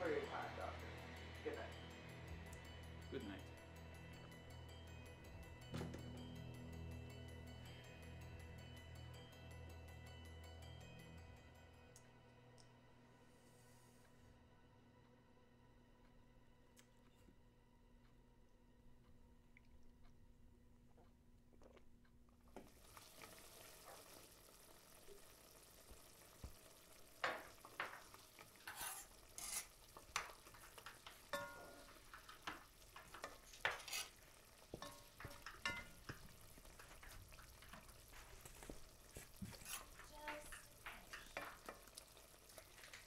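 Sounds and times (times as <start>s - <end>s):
food sizzling in a pan: 22.6s - 43.0s
utensil stirring and scraping: 28.4s - 43.0s.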